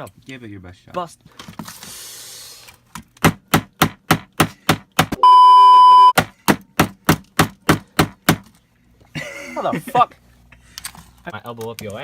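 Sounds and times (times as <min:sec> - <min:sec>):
loud electronic beep: 0:05.2 - 0:06.2.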